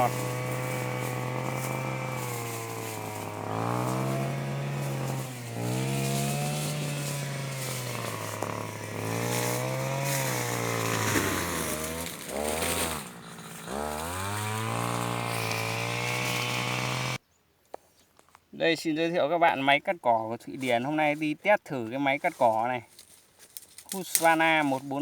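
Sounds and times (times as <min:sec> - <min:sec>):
brushcutter engine running: 0:00.0 - 0:17.2.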